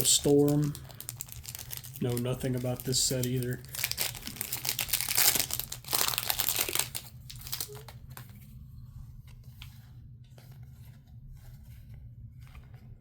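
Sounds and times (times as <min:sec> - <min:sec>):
foil pack tearing and crinkling: 0:00.0 - 0:08.0
cards rustling and ticking: 0:00.0 - 0:08.5, 0:09.2 - 0:13.0.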